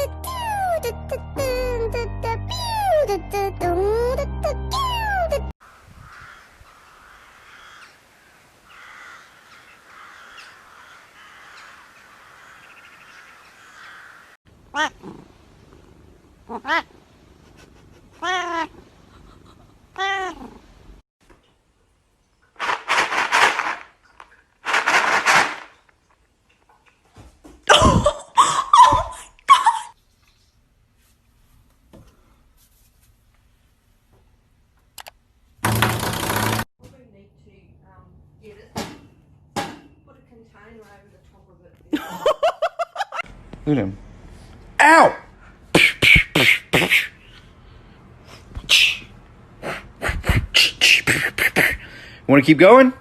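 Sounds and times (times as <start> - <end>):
cat meowing: 14.7 - 15.2, 16.4 - 17.0, 18.2 - 18.8, 20.0 - 20.6
cat hissing: 45.7 - 47.3.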